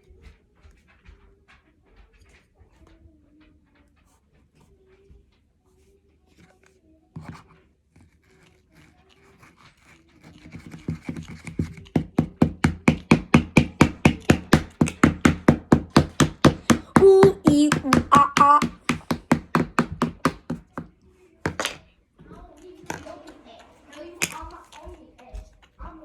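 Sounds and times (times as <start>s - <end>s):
hands slapping rhythmically: 11.9s - 20.9s.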